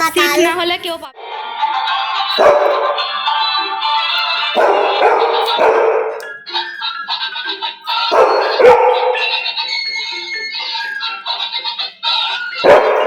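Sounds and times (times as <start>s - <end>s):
background music: 0.0s - 13.0s
dog barking: 2.4s - 2.9s, 4.5s - 6.2s, 8.1s - 9.4s, 12.6s - 13.0s.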